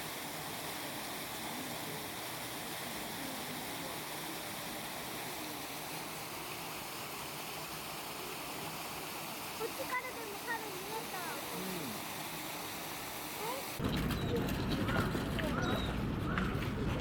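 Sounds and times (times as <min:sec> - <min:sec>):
distant voices: 0:08.4 - 0:17.0.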